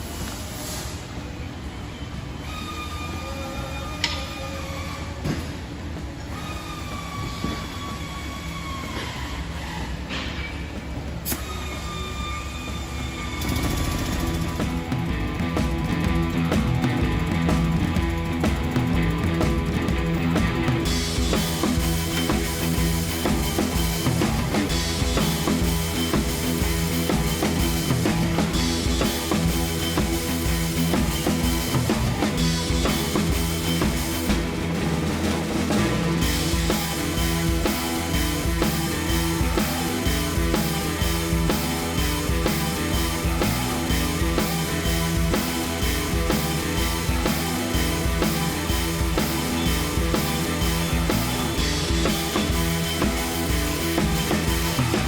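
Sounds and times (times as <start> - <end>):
drum-kit beat: 13.5 - 55.0.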